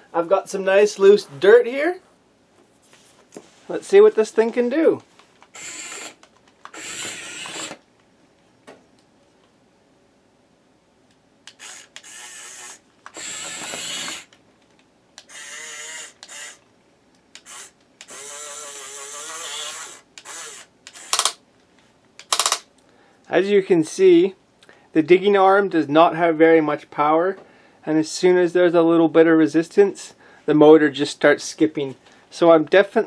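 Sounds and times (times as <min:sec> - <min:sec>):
toy electric motors whirring: 0:05.5 - 0:07.8, 0:11.5 - 0:14.4, 0:15.2 - 0:16.6, 0:17.4 - 0:21.4, 0:22.2 - 0:22.6
gears clattering: 0:20.9 - 0:21.4, 0:22.2 - 0:22.6.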